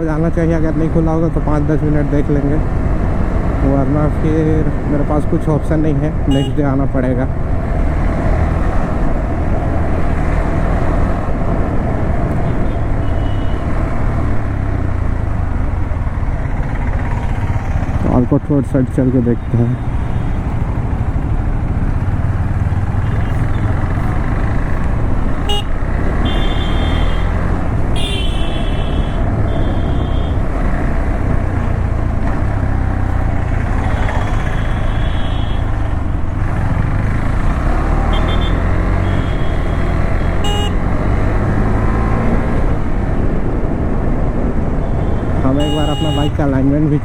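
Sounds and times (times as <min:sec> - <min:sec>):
motorcycle engine: 0:00.0 - 0:47.0
vehicle horns honking: 0:06.3 - 0:06.7, 0:12.4 - 0:13.8, 0:23.0 - 0:23.8, 0:25.4 - 0:30.5, 0:33.6 - 0:36.0, 0:37.6 - 0:41.1, 0:44.8 - 0:46.4
wind noise: 0:40.8 - 0:45.7.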